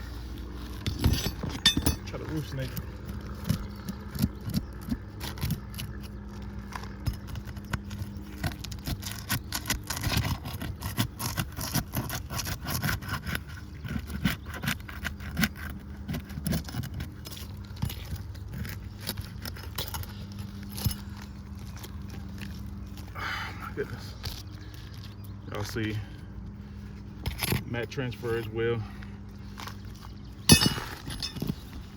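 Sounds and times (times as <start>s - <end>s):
shingles tearing: 0.4s - 23.1s.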